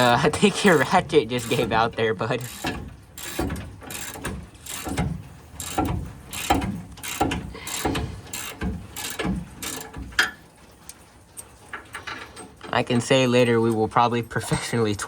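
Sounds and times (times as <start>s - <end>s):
hand ratchet clicking: 0.7s - 10.3s.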